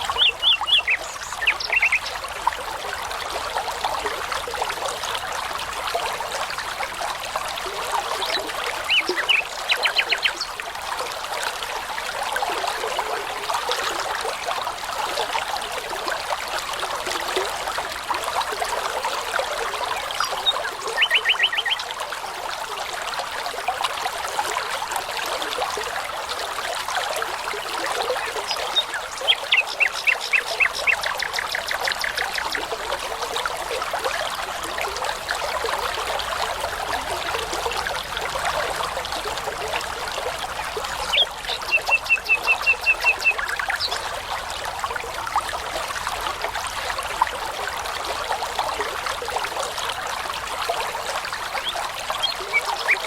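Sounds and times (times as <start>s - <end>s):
brook babbling: 0.0s - 53.0s
songbird trilling: 0.1s - 2.1s, 20.3s - 21.8s.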